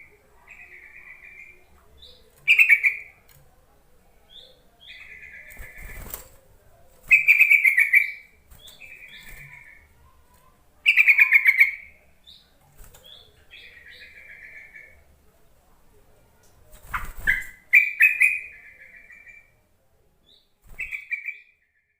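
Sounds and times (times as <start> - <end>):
bulbul chattering calls: 0.5 - 3.1, 7.1 - 9.8, 10.8 - 12.4, 16.9 - 19.4.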